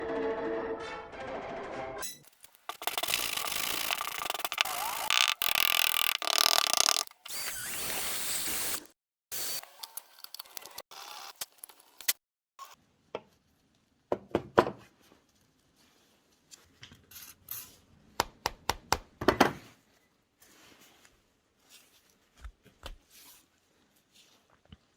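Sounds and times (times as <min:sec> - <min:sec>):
power tool running: 0:02.4 - 0:10.0
knocks and clicks of handwork: 0:14.1 - 0:14.8.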